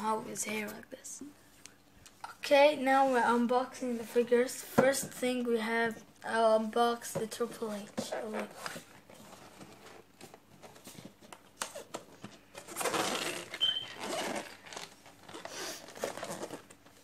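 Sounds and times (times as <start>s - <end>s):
packaging being torn open: 12.6s - 16.9s.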